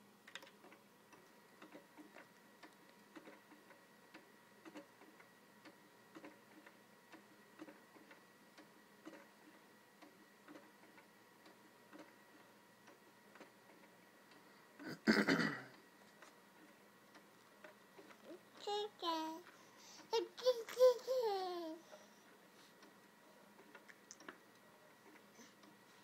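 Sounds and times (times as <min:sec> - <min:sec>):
faint steady hum: 0:00.0 - 0:26.0
baby swing mechanism ticking: 0:00.3 - 0:14.8, 0:16.6 - 0:22.1.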